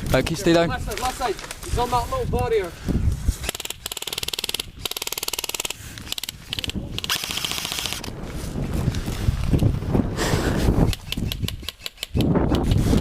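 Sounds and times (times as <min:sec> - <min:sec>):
airsoft rifle firing: 0:07.0 - 0:08.1.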